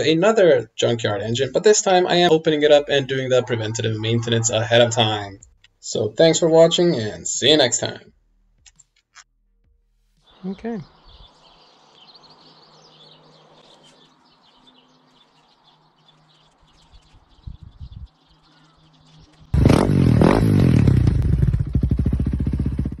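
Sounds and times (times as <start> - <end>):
birds chirping faintly: 0.0 - 8.8, 10.2 - 19.6
motorcycle engine revving: 19.2 - 23.0.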